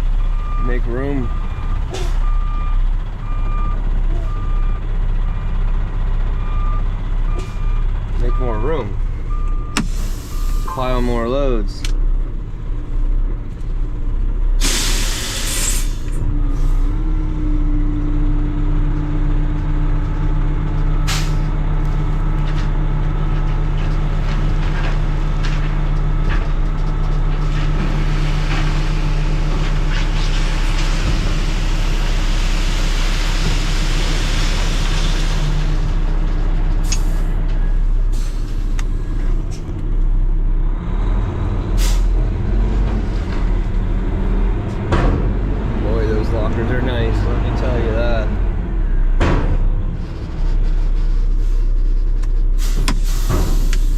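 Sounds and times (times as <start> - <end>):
truck diesel engine running: 0.0 - 53.9
air brake hiss: 14.6 - 16.2, 41.8 - 42.1, 52.6 - 53.9.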